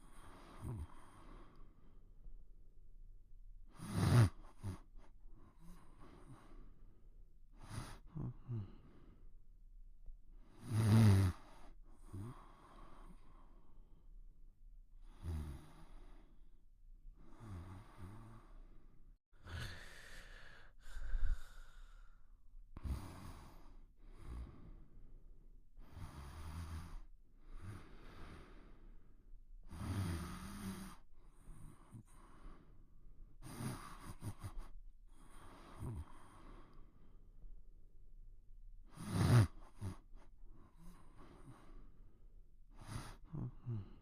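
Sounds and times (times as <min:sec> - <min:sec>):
quiet snoring: 0:00.0 - 0:01.8, 0:03.7 - 0:06.8, 0:07.6 - 0:09.2, 0:10.5 - 0:13.6, 0:15.0 - 0:16.4, 0:17.2 - 0:18.8, 0:22.8 - 0:25.0, 0:25.8 - 0:32.8, 0:33.4 - 0:37.0, 0:38.8 - 0:42.0, 0:42.7 - 0:44.0.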